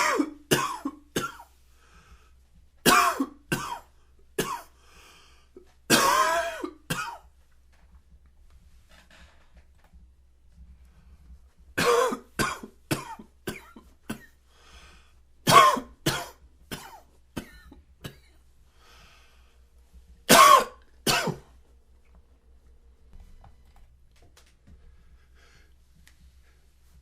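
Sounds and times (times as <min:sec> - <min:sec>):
man coughing: 0:00.0 - 0:01.5, 0:02.8 - 0:04.7, 0:05.9 - 0:07.2, 0:11.8 - 0:14.4, 0:15.5 - 0:18.4, 0:20.3 - 0:21.5.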